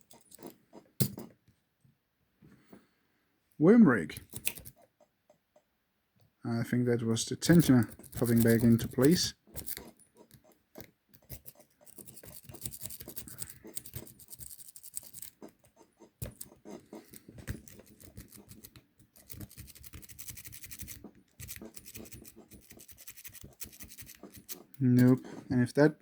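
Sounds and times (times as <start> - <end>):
metallic clicking and scratching in lock: 4.2 - 4.9, 7.5 - 25.2.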